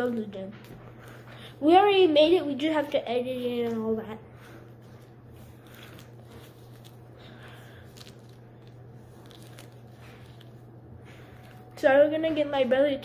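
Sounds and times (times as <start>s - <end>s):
low electrical hum: 0.0s - 13.0s
slime stress ball squishing: 5.3s - 11.8s.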